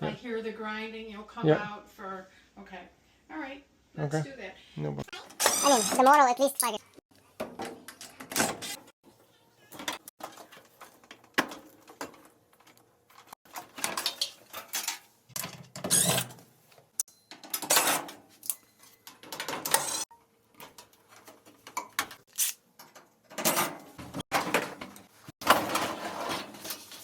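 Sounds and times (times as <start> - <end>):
metal panels scraping and knocking: 23.3 - 27.0.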